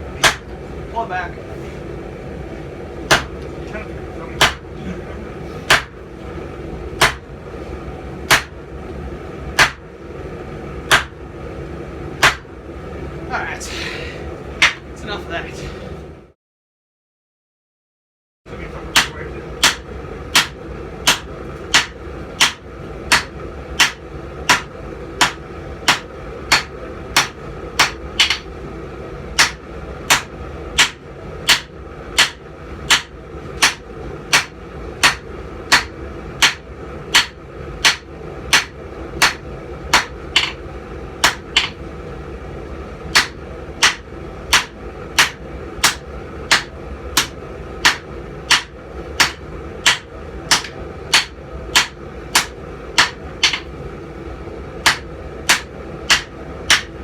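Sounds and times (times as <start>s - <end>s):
constant background hum: 0.0s - 16.4s, 18.5s - 57.0s
hammer on hot steel anvil: 0.2s - 0.5s, 18.9s - 28.4s, 29.4s - 40.6s, 41.2s - 41.8s, 43.1s - 53.7s, 54.8s - 57.0s.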